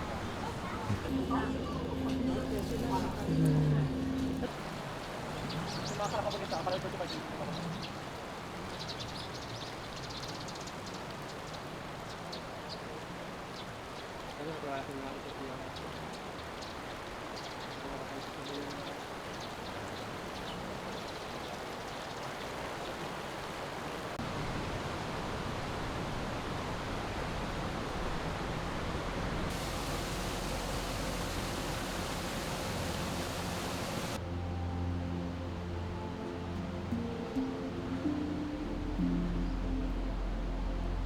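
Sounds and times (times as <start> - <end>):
outdoor rushing noise: 29.5 - 34.2.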